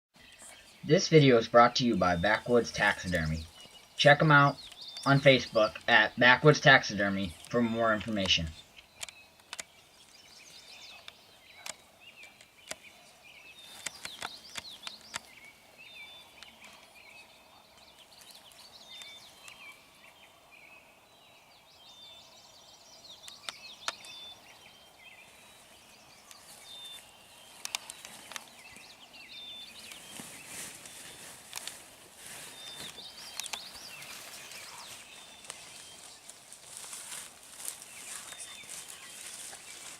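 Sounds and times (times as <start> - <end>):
small birds chirping: 0.1 - 39.9
quiet outdoor hiss: 0.2 - 39.9
sharp clicks and rustles: 7.4 - 9.8, 13.7 - 15.4, 27.6 - 28.6, 29.8 - 34.7.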